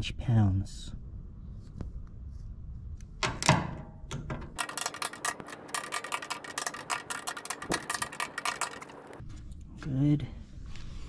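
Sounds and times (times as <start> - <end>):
ratchet wrench clicking: 4.6 - 9.2.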